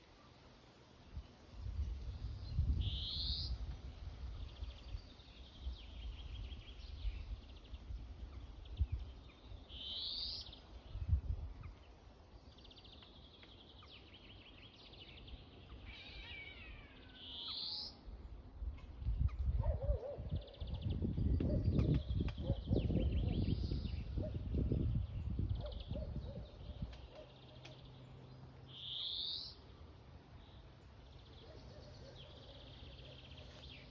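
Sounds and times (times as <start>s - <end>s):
bird trills: 15.9s - 18.0s
birds calling: 18.8s - 33.9s.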